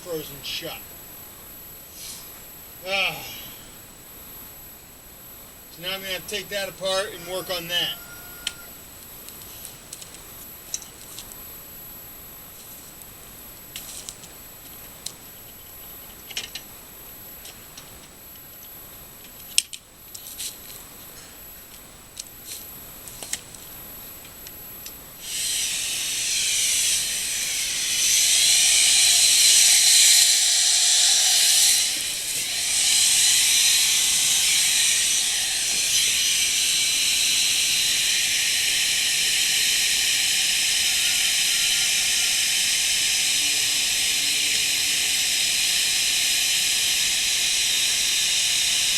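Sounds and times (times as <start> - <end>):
hairdryer blowing with loud hiss: 25.2 - 48.9.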